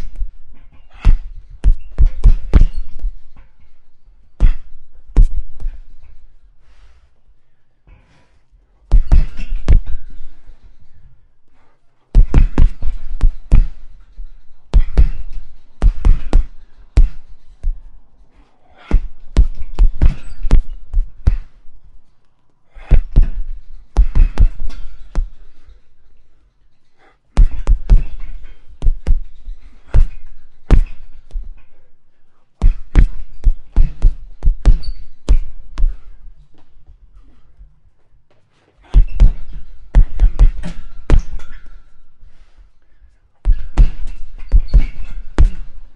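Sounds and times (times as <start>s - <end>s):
punches on a punching bag: 0.9s - 3.2s, 4.4s - 5.9s, 8.9s - 10.4s, 12.1s - 14.0s, 14.7s - 17.8s, 18.8s - 21.6s, 22.8s - 25.6s, 27.3s - 31.6s, 32.6s - 36.2s, 38.8s - 41.7s, 43.4s - 45.9s.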